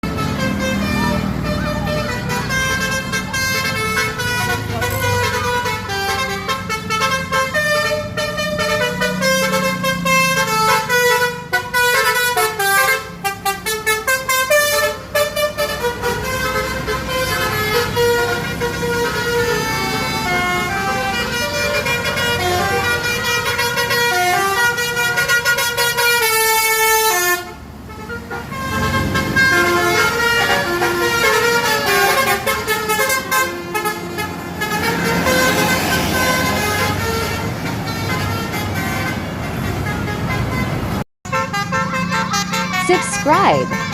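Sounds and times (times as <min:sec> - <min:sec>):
bus horns playing melody: 0:00.0 - 0:43.9.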